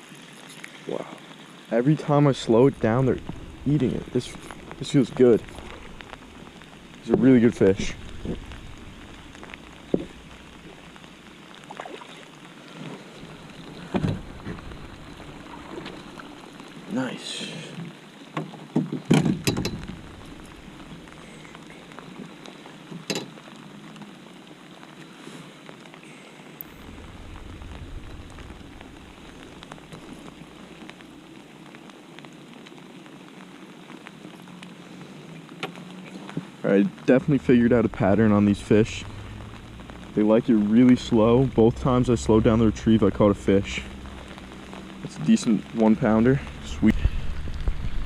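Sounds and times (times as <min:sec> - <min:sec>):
heavy rain on water: 0:00.0 - 0:48.0
low rumble: 0:02.1 - 0:16.9, 0:19.4 - 0:22.0, 0:26.6 - 0:31.5, 0:37.2 - 0:48.0
thumps on canoe: 0:18.4 - 0:20.0.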